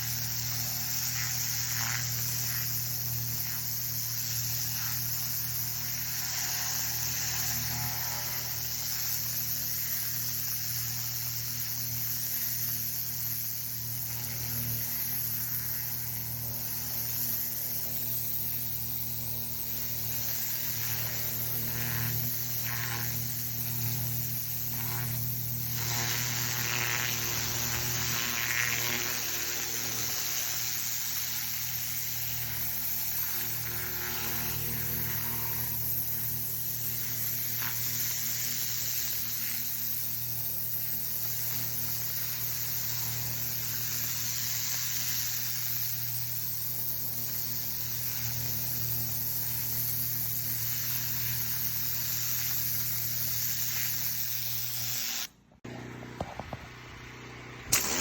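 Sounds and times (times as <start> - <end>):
water spray hissing: 0.0 - 7.7, 8.4 - 28.5, 29.1 - 33.6, 35.6 - 55.3, 57.7 - 58.0
pressure washer drone: 0.0 - 58.0.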